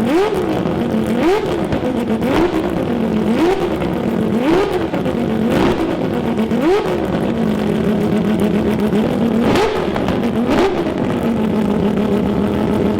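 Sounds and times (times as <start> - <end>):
engine throttle blips: 0.0 - 12.9
rotary engine idling: 0.0 - 12.9.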